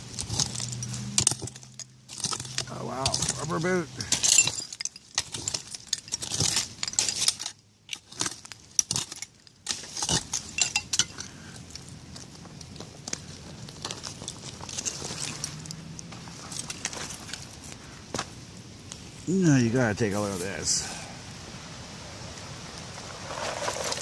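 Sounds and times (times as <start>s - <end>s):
tool scraping debris: 0.0s - 11.9s, 12.8s - 17.8s, 23.0s - 24.0s
glass shards clinking: 0.1s - 11.9s, 14.2s - 15.8s.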